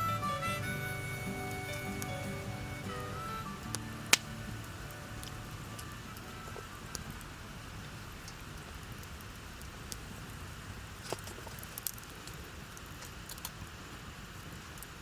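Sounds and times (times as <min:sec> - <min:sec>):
fire crackling: 0:00.0 - 0:15.0
sharp pops: 0:04.1 - 0:04.6.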